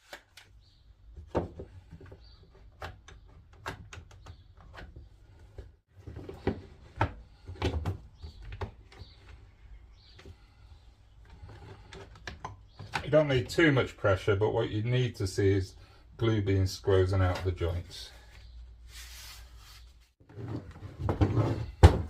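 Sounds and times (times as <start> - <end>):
wooden thuds: 21.0 - 22.0.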